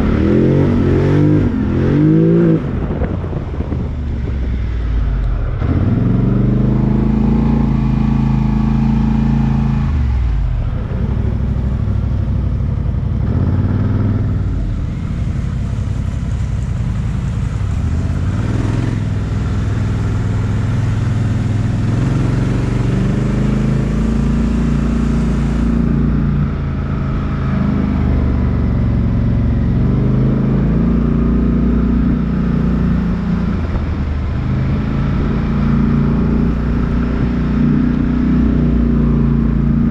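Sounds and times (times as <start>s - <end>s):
vehicle engine revving under load: 17.2s - 39.9s.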